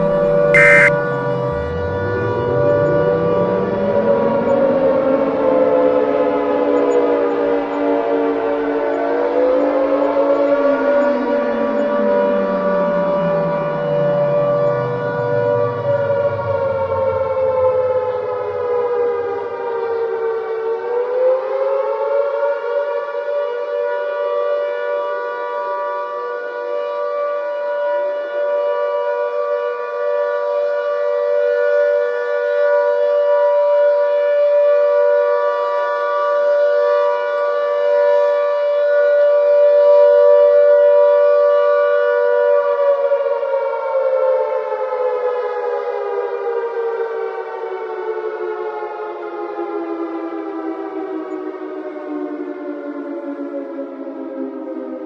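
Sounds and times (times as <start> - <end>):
deeper siren tone winding down: 0.0 - 6.7
civil defense siren wailing: 0.0 - 55.0.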